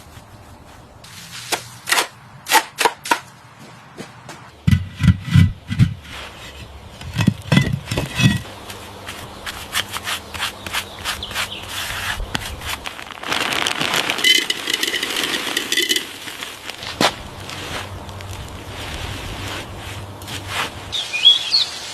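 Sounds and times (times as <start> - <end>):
scraping on wood: 4.0 - 12.8.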